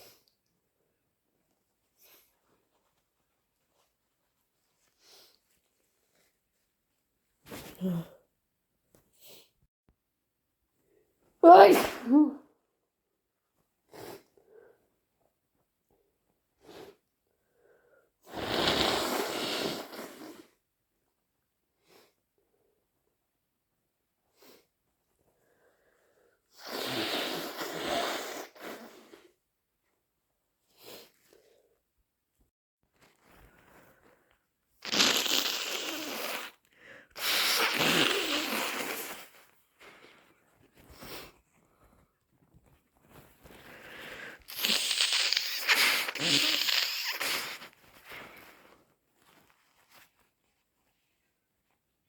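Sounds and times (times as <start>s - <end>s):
person blowing nose: 11.5s - 12.4s, 13.9s - 14.3s, 18.2s - 20.5s, 26.5s - 29.3s, 34.8s - 40.0s, 43.6s - 48.7s
person sniffing: 18.3s - 20.4s, 34.8s - 40.1s, 43.6s - 48.6s
tissue rustling: 38.9s - 44.4s, 47.4s - 52.0s.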